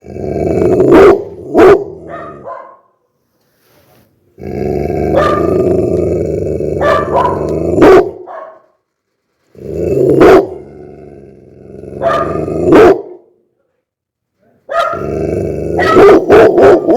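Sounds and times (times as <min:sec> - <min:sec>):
dog growling: 0:00.0 - 0:02.5, 0:04.4 - 0:08.2, 0:09.5 - 0:13.0, 0:14.9 - 0:16.9
dog barking angrily: 0:00.6 - 0:03.0, 0:04.9 - 0:05.9, 0:06.6 - 0:08.8, 0:09.9 - 0:10.7, 0:11.9 - 0:13.3, 0:14.7 - 0:16.9.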